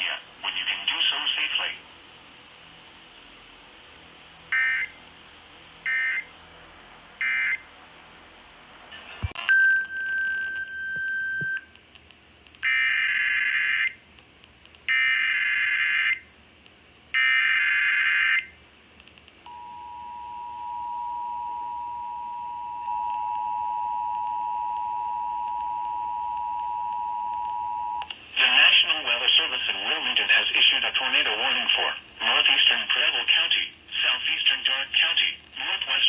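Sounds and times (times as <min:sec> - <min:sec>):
click: 0:19.0 - 0:19.5.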